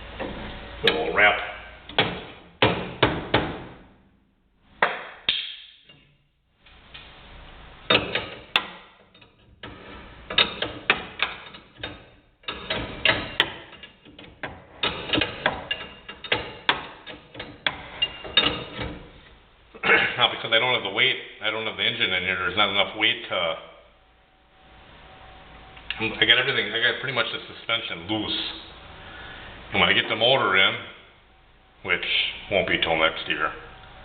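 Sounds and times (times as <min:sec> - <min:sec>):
hand tools clicking and knocking: 0:07.9 - 0:19.0.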